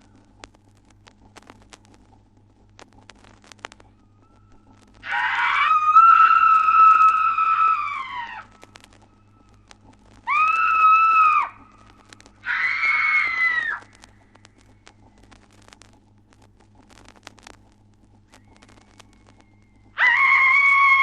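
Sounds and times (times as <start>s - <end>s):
faint record clicks: 0.0s - 21.0s
low hum: 0.0s - 21.0s
high-pitched screams: 5.0s - 8.7s, 10.2s - 11.7s, 12.4s - 13.9s, 20.0s - 21.0s
high-pitched shriek: 5.0s - 8.7s, 10.3s - 11.7s, 20.0s - 21.0s.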